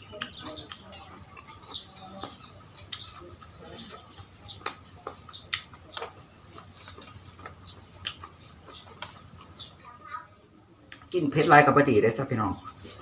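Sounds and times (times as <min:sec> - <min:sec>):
mouth chewing with wet smacks: 0:00.0 - 0:09.8, 0:10.9 - 0:11.1.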